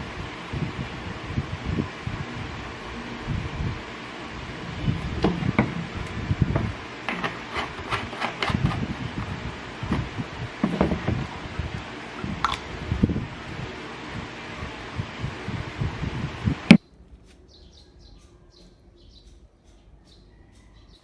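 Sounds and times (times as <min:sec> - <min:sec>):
handling knocks and thumps: 0:05.1 - 0:08.8, 0:09.8 - 0:11.2.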